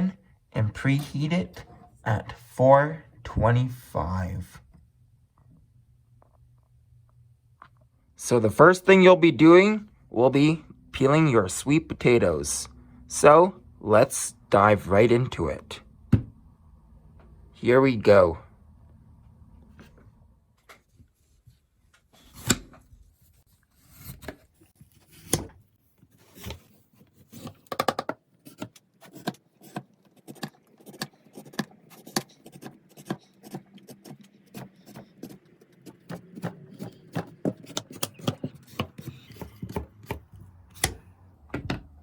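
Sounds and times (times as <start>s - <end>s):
peeler scraping vegetable skin: 28.4s - 41.0s.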